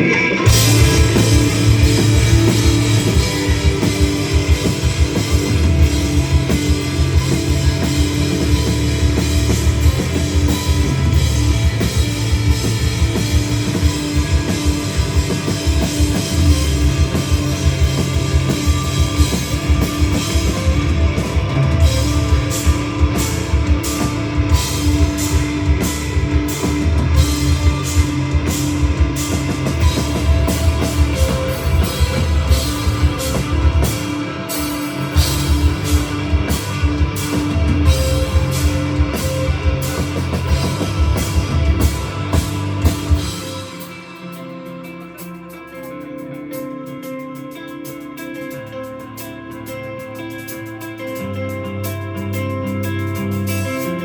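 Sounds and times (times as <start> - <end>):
rock band playing: 0.0 - 54.0.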